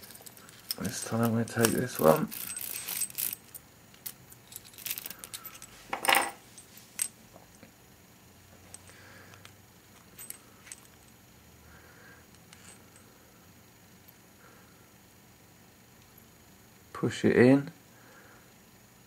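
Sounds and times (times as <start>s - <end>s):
metal keys and locks clinking: 0.0s - 7.1s.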